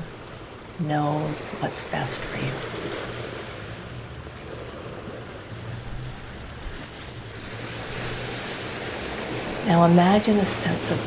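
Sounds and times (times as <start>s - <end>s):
ocean waves on shore: 0.0s - 11.0s.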